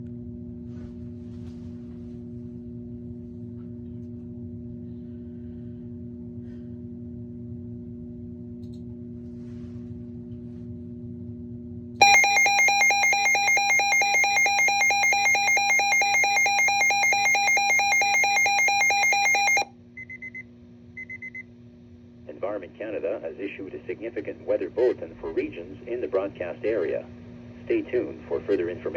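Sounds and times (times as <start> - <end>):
pulsing shrill alert alarm: 12.0 - 19.7
short high beeps: 12.0 - 20.4.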